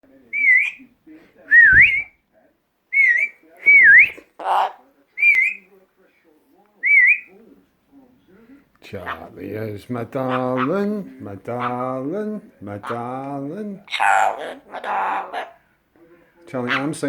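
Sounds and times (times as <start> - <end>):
parrot whistling: 0.3 - 0.8, 1.5 - 2.1, 2.9 - 4.2, 5.2 - 5.7, 6.8 - 7.3
parrot harsh call: 13.9 - 15.6.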